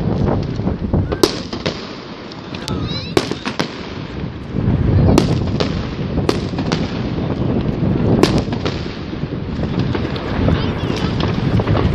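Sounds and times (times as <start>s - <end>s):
fireworks bangs: 0.0s - 11.9s.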